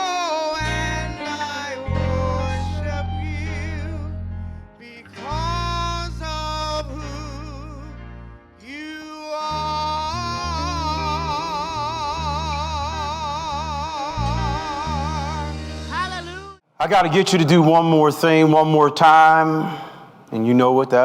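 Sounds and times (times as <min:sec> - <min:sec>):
sustained low bass chords: 0:00.6 - 0:08.4, 0:09.6 - 0:16.6.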